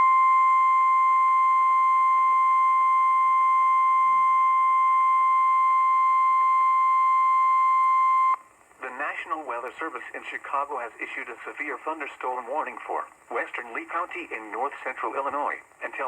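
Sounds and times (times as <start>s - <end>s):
steady warning alarm tone: 0.0s - 8.4s.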